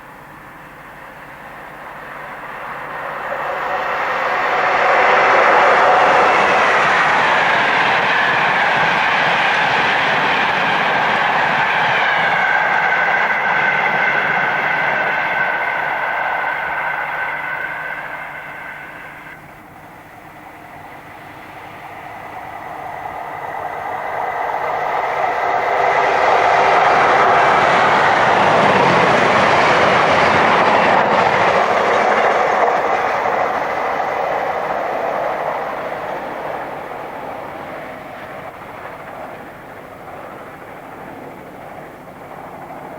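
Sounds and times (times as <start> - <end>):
high whine: 0.0 - 42.9
train passing at speed: 0.0 - 42.9.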